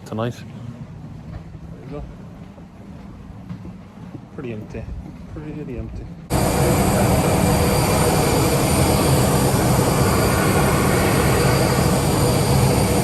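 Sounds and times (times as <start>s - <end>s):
jet airliner cabin noise: 6.3s - 13.0s.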